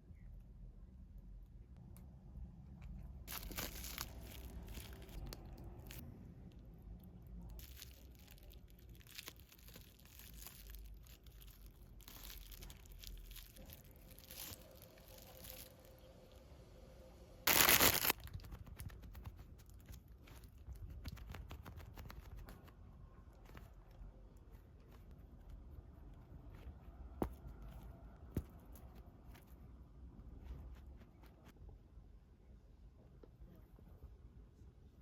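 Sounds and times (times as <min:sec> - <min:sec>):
plastic packaging crinkling: 0:03.3 - 0:06.0, 0:07.6 - 0:16.4, 0:17.5 - 0:22.7
loud tearing: 0:17.5 - 0:19.1.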